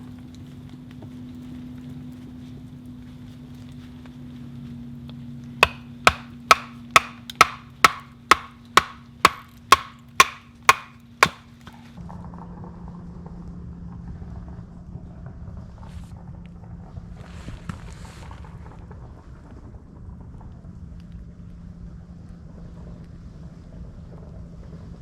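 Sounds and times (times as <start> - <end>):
wood chopping knocks: 5.6 - 11.8.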